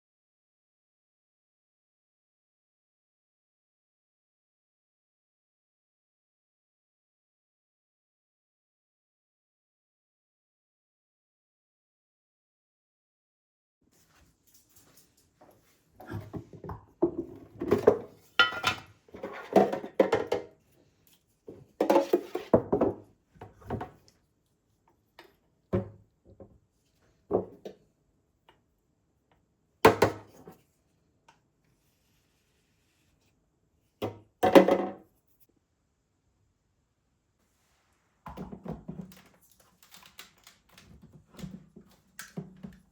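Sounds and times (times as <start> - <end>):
objects knocking and clattering: 16.0 - 20.6, 21.5 - 24.1, 27.3 - 27.8, 34.0 - 35.0, 38.3 - 42.9.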